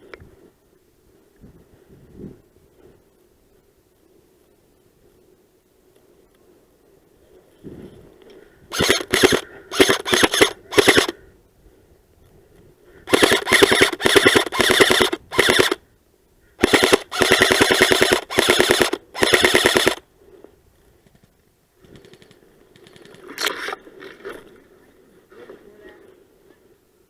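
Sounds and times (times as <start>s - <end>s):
airsoft gun firing bursts: 8.7s - 11.2s, 13.1s - 15.8s, 16.6s - 20.0s.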